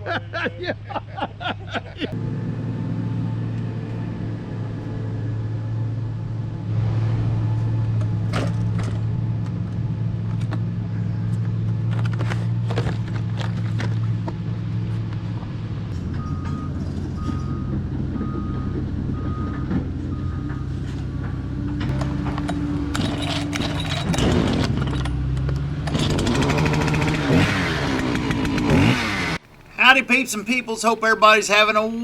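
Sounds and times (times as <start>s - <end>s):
excavator diesel engine: 0.0s - 32.0s
excavator alarm beeping: 16.1s - 22.8s
metal clanks: 21.2s - 27.1s.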